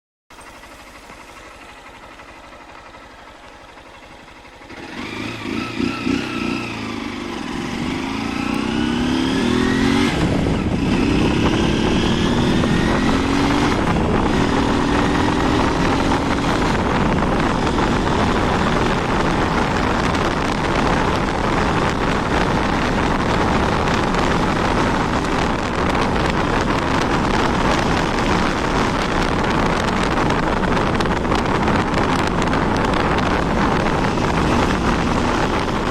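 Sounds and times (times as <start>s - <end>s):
motorcycle engine revving: 0.4s - 35.9s.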